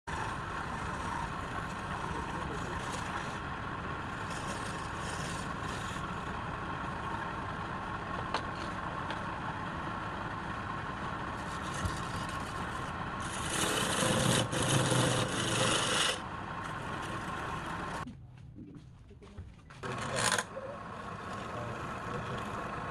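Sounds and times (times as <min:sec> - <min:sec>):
lathe tool rasping wood: 0:00.1 - 0:07.1, 0:11.3 - 0:18.0, 0:19.8 - 0:20.5.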